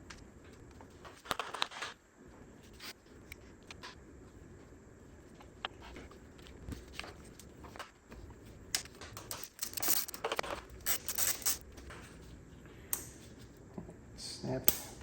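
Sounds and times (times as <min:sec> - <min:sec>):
rustling and scraping: 0:00.5 - 0:12.6
small parts clicking: 0:08.8 - 0:11.6.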